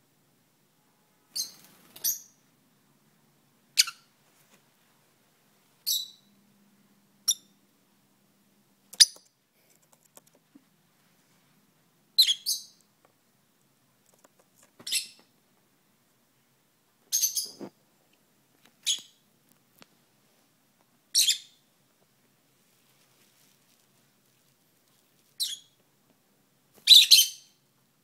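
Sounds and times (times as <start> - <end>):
lovebird chirping: 1.2 - 2.4, 3.7 - 4.1, 5.8 - 6.4, 7.2 - 7.6, 8.9 - 9.3, 12.2 - 12.9, 14.8 - 15.3, 17.1 - 17.7, 18.8 - 19.2, 21.1 - 21.7, 25.4 - 25.8, 26.8 - 27.6.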